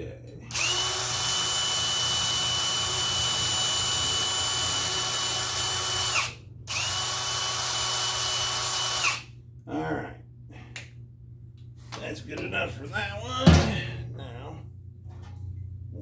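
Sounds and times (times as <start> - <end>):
electric drill whining: 0.5 - 9.2.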